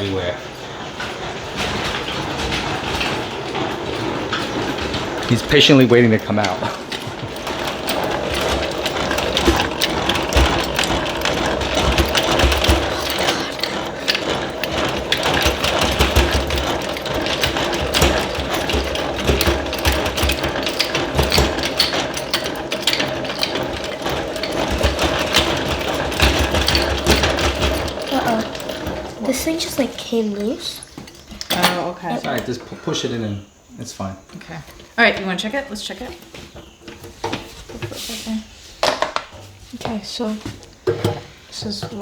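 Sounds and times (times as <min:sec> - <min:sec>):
honey extractor rattling: 0:00.0 - 0:42.0.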